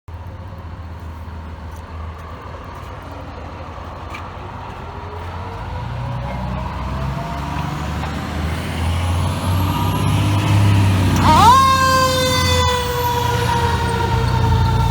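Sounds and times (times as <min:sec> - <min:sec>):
fire truck engine rumbling: 0:00.1 - 0:14.9
siren rising in pitch: 0:05.8 - 0:14.9.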